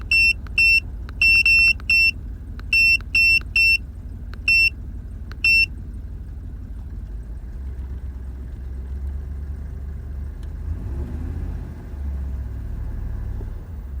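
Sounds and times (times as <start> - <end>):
short electronic beep: 0.0 - 2.1, 2.7 - 3.8, 4.5 - 4.7, 5.4 - 5.7
engine idling with misfire: 0.0 - 10.9.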